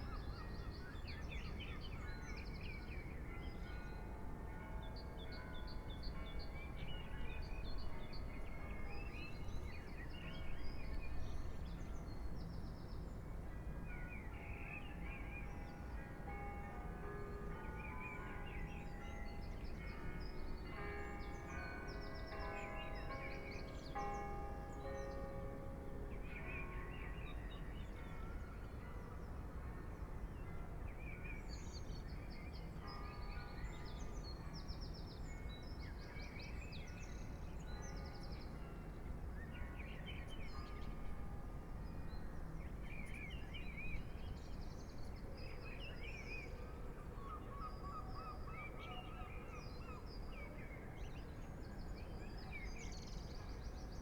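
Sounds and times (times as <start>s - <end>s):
church bells ringing: 15.6s - 29.0s.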